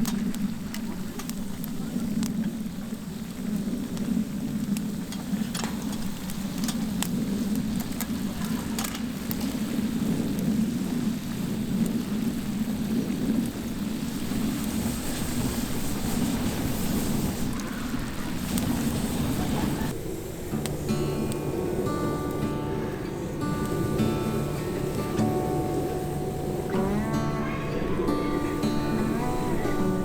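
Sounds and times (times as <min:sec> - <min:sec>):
wood fire crackling: 0:00.0 - 0:30.0
steady low noise: 0:19.1 - 0:30.0.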